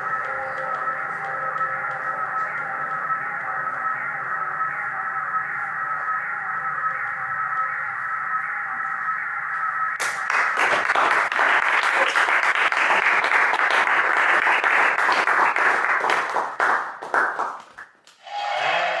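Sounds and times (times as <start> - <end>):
audience applauding: 10.0 - 17.9.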